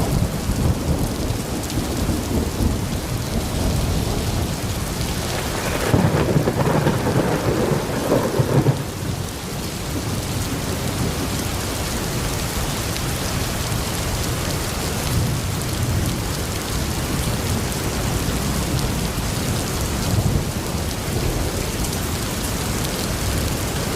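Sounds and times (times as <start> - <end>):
thunder rumbling: 0.0 - 11.5
heavy rain: 0.0 - 23.9.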